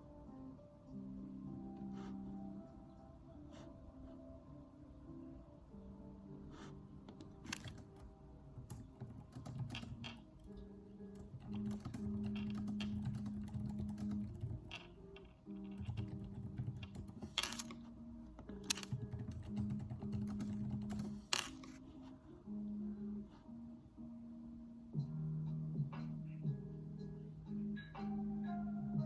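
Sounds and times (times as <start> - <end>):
soft background music: 0.0 - 29.0
computer keyboard typing: 6.6 - 21.8.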